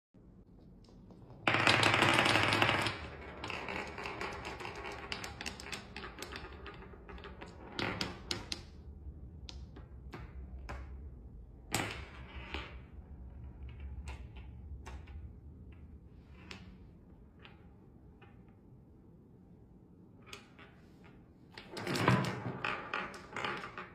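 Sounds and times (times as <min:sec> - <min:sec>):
marbles clattering down marble run: 0:01.4 - 0:08.6.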